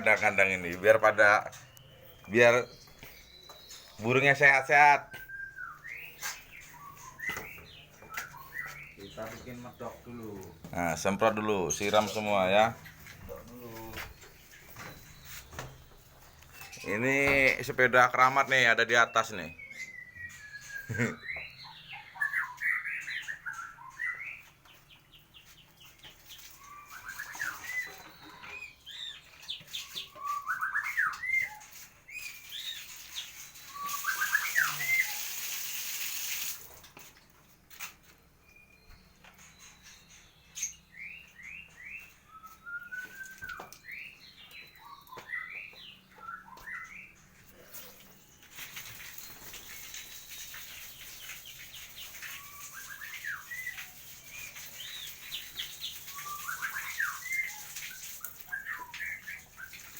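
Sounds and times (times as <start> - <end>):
birds whistling and chirping: 0.0 - 36.5, 38.4 - 59.9
hissing water spray: 32.3 - 36.8, 47.8 - 59.9.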